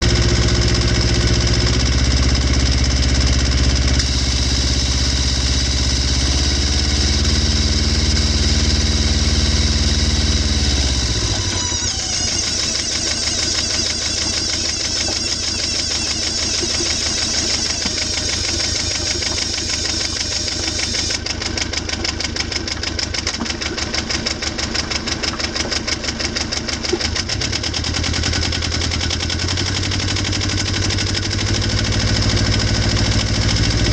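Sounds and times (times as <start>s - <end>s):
marine diesel engine running: 0.0s - 33.9s
fast even gearbox rattle: 10.4s - 22.2s.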